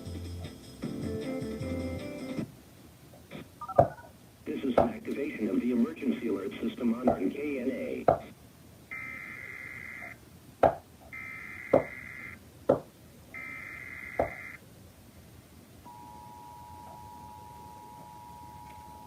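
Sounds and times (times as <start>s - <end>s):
data tone bursts: 15.9s - 19.0s.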